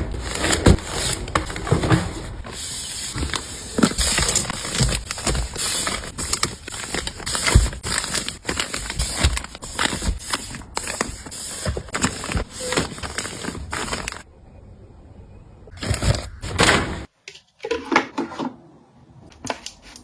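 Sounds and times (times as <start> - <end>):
packaging rustling and scraping: 0.0 - 14.3, 15.8 - 17.1.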